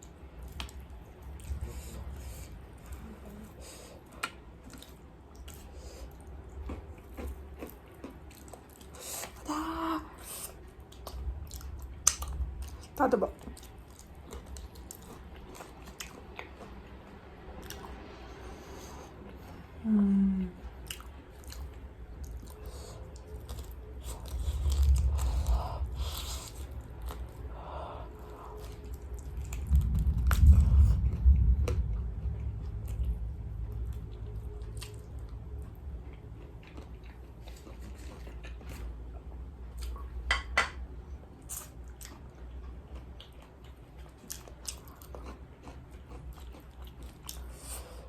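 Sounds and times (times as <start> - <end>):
chewing crispy fried chicken: 0.0 - 19.5, 20.7 - 40.2, 41.3 - 48.0
person humming: 19.8 - 20.6
low rumbling bumps: 24.0 - 36.8.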